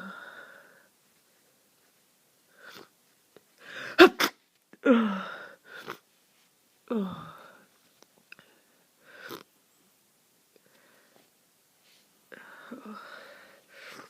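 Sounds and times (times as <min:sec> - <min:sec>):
quiet breaths: 0:00.0 - 0:04.0, 0:04.6 - 0:14.0
person sneezing: 0:03.8 - 0:04.4.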